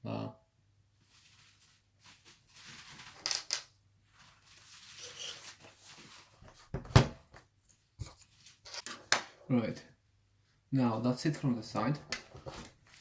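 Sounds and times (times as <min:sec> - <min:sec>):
soft scraping and rubbing: 0:01.0 - 0:03.2, 0:04.1 - 0:06.6.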